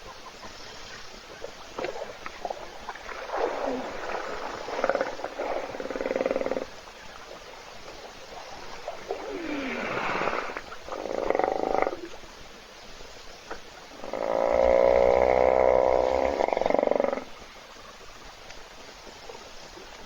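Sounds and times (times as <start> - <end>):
hippopotamus snoring: 3.6 - 6.8, 9.1 - 12.1, 14.0 - 17.4.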